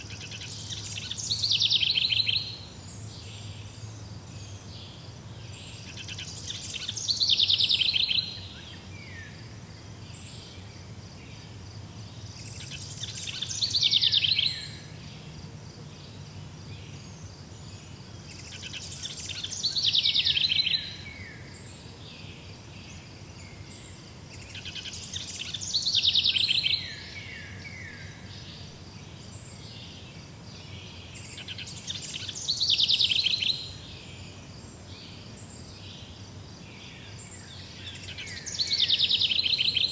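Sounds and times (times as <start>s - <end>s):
faint insect-like trill: 0.0s - 39.9s
songbird singing: 0.0s - 39.9s.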